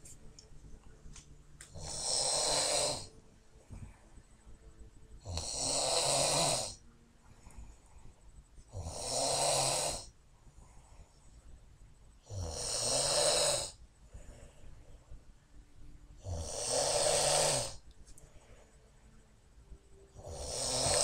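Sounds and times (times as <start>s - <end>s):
woman snoring: 1.7s - 3.1s, 5.2s - 6.8s, 8.7s - 10.1s, 12.2s - 13.8s, 16.2s - 17.8s, 20.1s - 21.0s.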